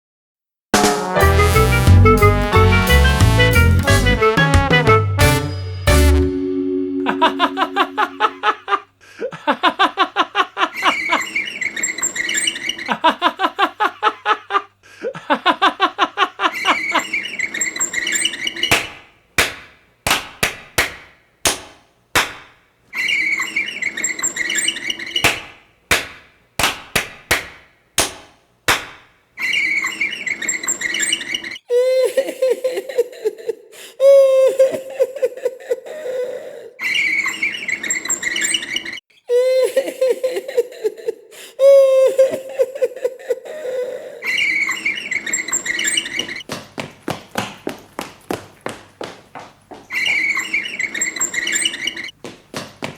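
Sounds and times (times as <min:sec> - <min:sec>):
people laughing: 0:07.0 - 0:17.4, 0:31.3 - 0:33.7, 0:34.4 - 0:36.2, 0:39.6 - 0:41.3, 0:42.0 - 0:45.3
sharp body smacks: 0:18.7 - 0:22.6, 0:25.2 - 0:29.1.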